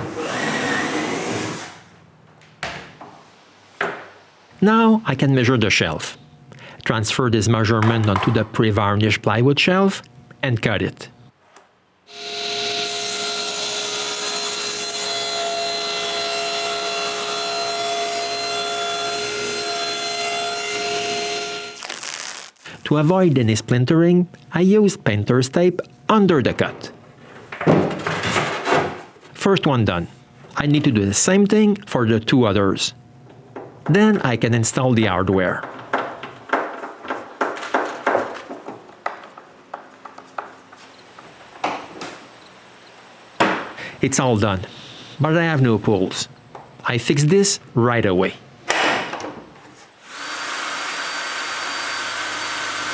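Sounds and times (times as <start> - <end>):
power saw cutting plywood: 0.0 - 1.8, 12.1 - 21.8, 50.0 - 52.9.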